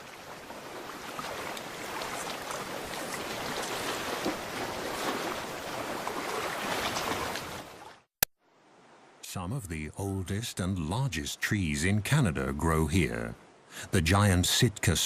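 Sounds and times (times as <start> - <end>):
small waves washing over rocks: 0.0 - 7.9.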